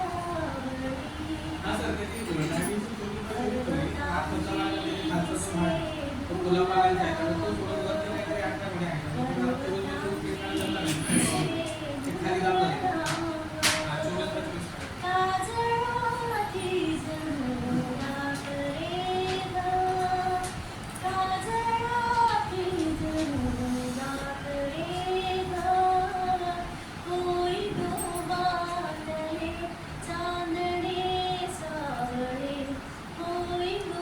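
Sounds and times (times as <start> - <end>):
woman singing solo: 9.2 - 34.0.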